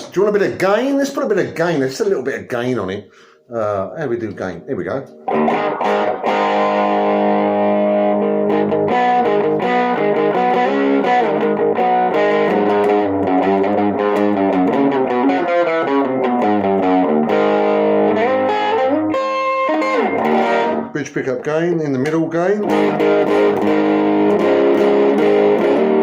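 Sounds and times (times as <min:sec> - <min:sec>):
overdriven electric guitar: 0:05.0 - 0:21.0, 0:22.0 - 0:26.0.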